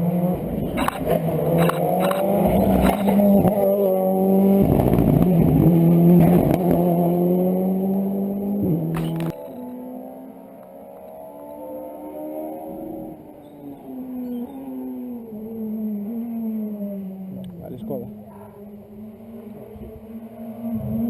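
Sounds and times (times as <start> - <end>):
rally car engine accelerating: 0.0 - 21.0.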